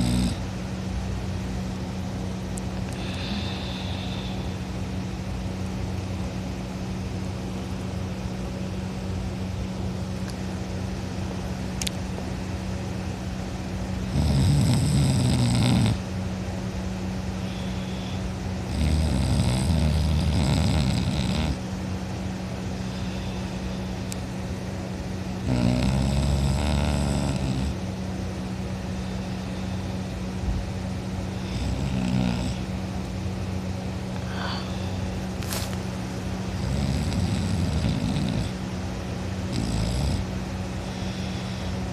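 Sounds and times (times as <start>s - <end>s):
person snoring: 0.0s - 0.4s, 2.9s - 4.6s, 14.1s - 16.0s, 17.4s - 21.6s, 25.4s - 27.8s, 31.4s - 32.6s, 34.2s - 35.6s, 36.6s - 38.6s, 39.5s - 40.2s
steady low hum: 0.0s - 41.9s.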